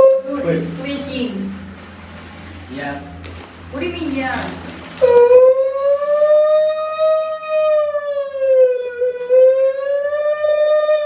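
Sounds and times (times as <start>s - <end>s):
person imitating a siren: 5.0s - 11.0s.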